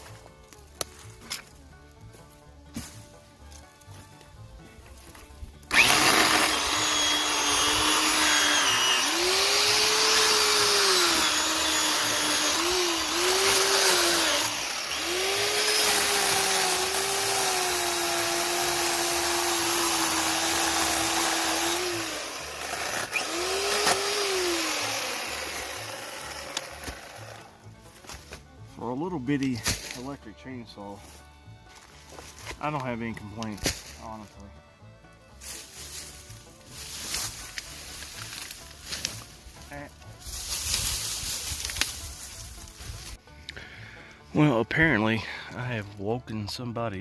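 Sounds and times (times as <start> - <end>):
electric chainsaw cutting wood: 5.6 - 27.8, 36.8 - 39.7, 40.3 - 43.2.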